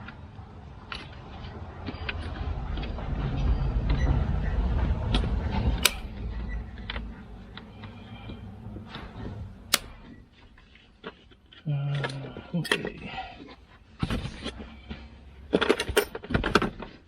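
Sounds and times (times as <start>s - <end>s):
low rumbling handling noise: 0.0s - 17.0s
sharp clicks: 9.7s - 10.0s.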